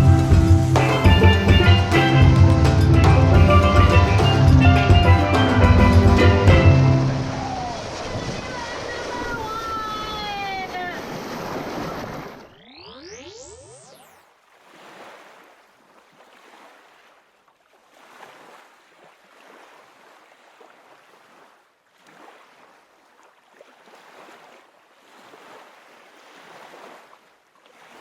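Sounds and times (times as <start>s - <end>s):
rushing splashing water: 0.0s - 12.5s.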